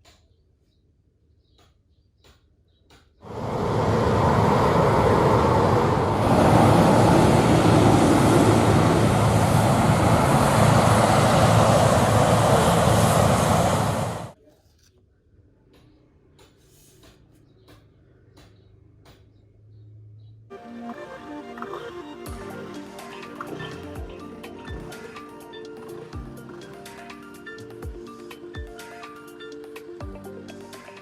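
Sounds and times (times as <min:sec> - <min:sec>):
vehicle rumbling: 0:03.2 - 0:14.4.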